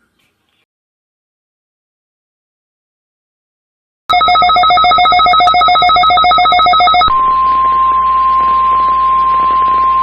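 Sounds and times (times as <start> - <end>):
steady alarm tone: 4.1 - 10.0
two-tone warble alert: 4.1 - 10.0.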